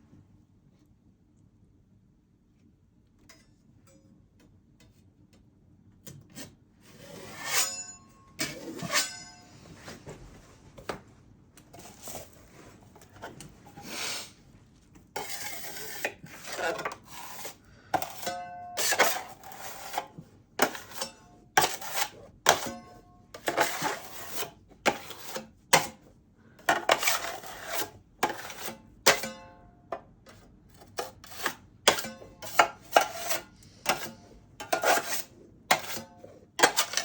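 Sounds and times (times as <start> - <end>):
metal tool scraping on metal: 7.1 - 9.6, 15.2 - 25.2, 31.2 - 37.0.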